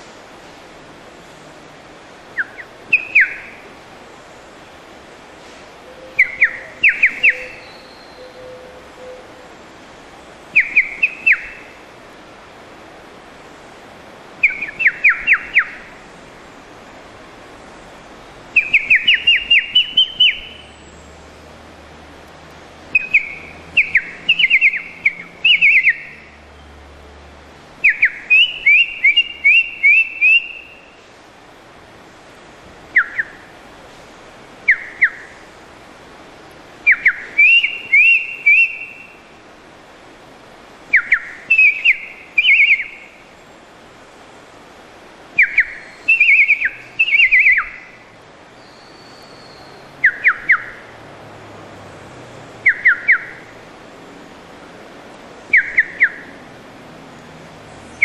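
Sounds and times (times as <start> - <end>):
person whistling birdsong: 23.0 - 26.0, 27.8 - 30.9, 36.9 - 39.1, 45.4 - 47.8.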